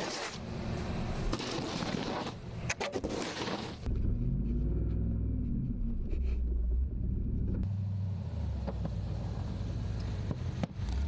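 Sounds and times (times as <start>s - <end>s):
vehicle engine humming: 0.4s - 1.4s, 3.8s - 11.0s.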